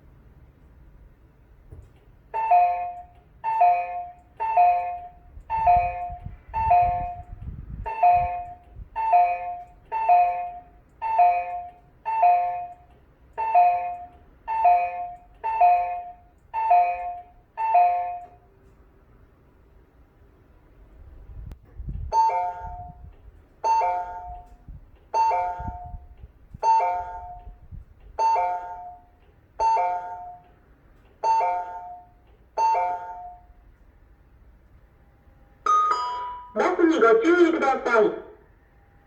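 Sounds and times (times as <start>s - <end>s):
bus warning chime dings: 1.8s - 19.4s, 22.1s - 39.0s.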